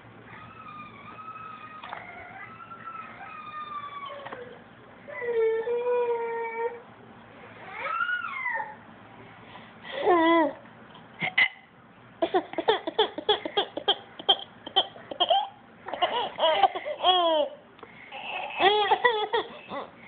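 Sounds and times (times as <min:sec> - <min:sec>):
baby laughing: 0:12.2 - 0:19.9.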